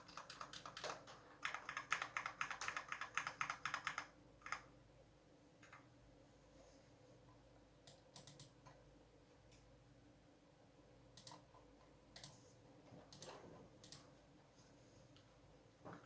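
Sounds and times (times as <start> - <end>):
mechanical keyboard keystrokes: 0.0 - 4.6.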